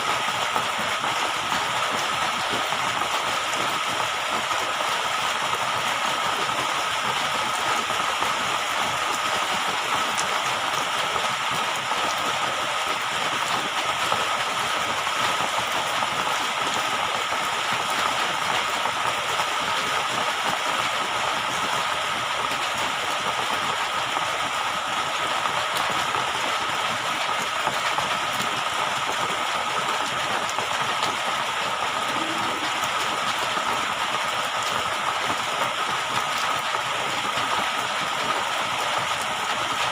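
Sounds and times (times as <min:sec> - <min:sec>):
rushing hissing water: 0:00.0 - 0:39.9
constant high tone: 0:32.1 - 0:33.0.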